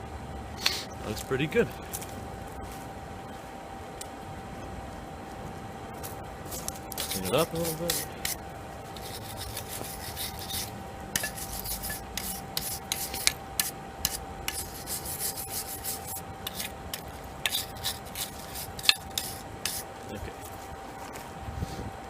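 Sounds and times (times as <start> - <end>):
faint steady hum: 0.0 - 22.0
hand scrubbing on steel: 6.9 - 8.4, 9.0 - 20.0.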